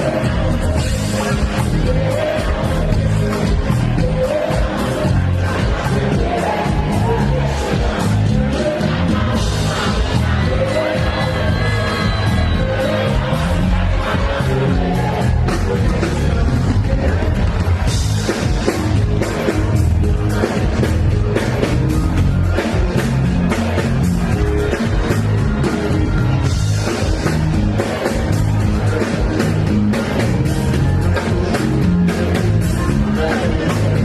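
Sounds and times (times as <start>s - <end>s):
drum beat: 0.0s - 34.0s
heavy bass: 0.0s - 34.0s
live afrobeats song: 0.0s - 34.0s.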